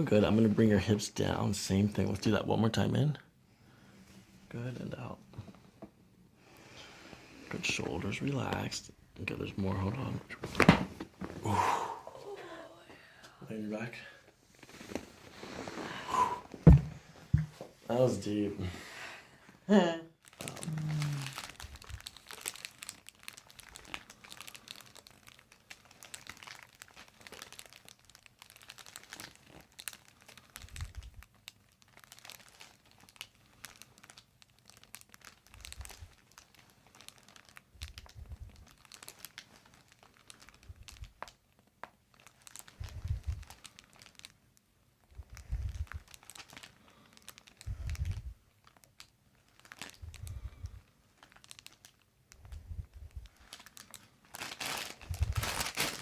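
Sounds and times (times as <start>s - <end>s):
rustling and crinkling: 9.5s - 11.5s, 14.2s - 18.2s, 20.2s - 44.4s, 45.0s - 56.0s.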